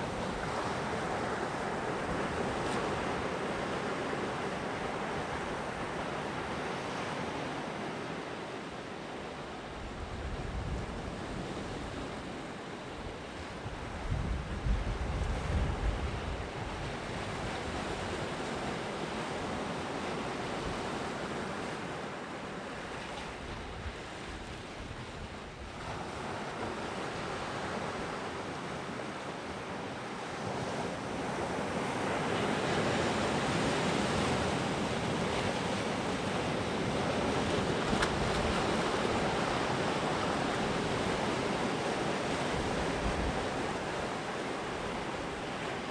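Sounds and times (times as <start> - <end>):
sea waves breaking on shore: 0.0 - 45.9
wind gusting on microphone: 13.0 - 18.2.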